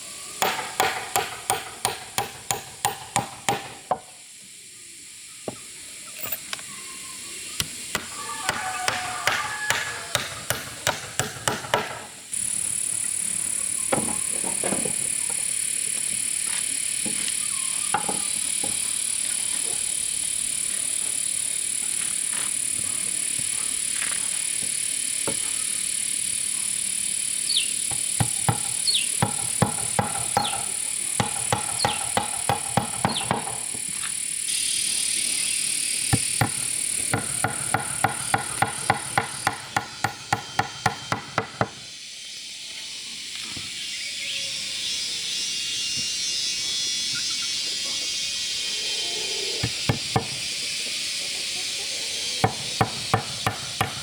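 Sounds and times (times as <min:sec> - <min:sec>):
tool knocking on wood: 0:00.4 - 0:04.1, 0:07.6 - 0:12.1, 0:27.9 - 0:33.8, 0:36.2 - 0:41.8, 0:49.6 - 0:50.4, 0:52.4 - 0:54.0.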